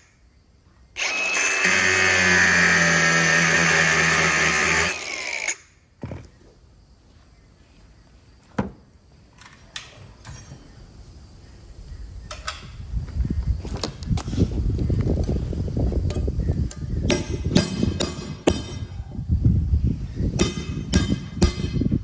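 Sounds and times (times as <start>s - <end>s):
power tool winding down: 1.0s - 5.7s
sharp metallic knocks: 16.1s - 19.0s, 20.4s - 22.0s.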